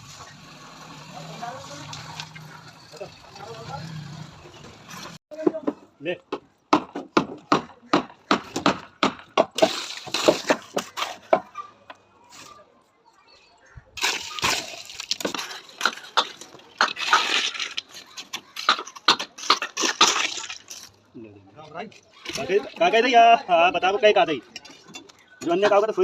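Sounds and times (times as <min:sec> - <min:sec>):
scraping on building material: 0:09.5 - 0:12.7, 0:14.0 - 0:21.0.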